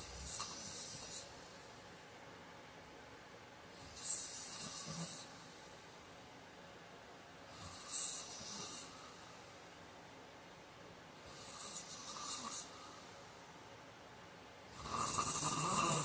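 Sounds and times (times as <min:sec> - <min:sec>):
man snoring: 0:00.0 - 0:01.3, 0:11.4 - 0:12.8, 0:14.8 - 0:16.0.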